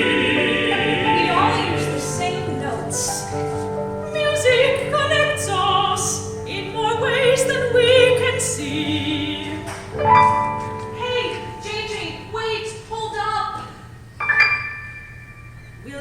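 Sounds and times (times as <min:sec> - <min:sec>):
instrumental accompaniment: 0:00.0 - 0:12.7
operatic singing: 0:00.0 - 0:13.9.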